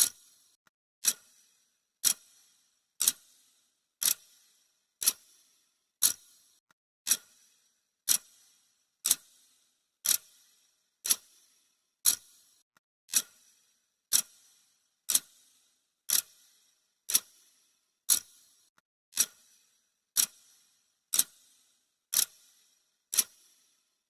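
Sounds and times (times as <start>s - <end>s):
clock ticking: 3.0s - 3.2s.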